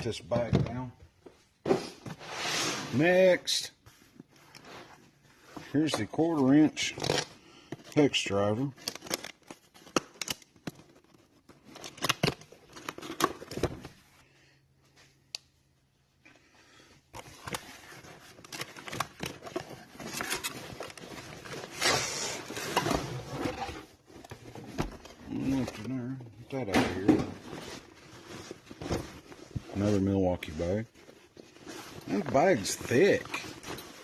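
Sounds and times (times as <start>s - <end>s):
packaging scraping: 17.2s - 23.9s.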